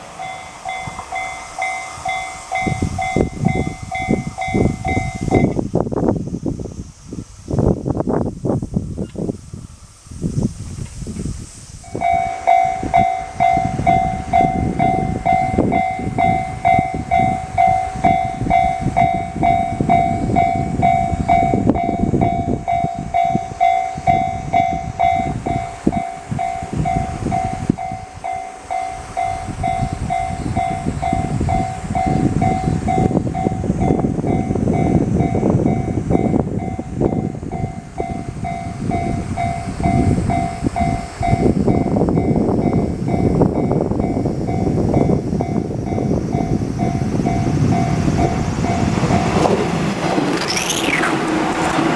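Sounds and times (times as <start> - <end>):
train rumbling past: 0.0 - 51.9
level crossing alarm dinging: 47.3 - 51.9.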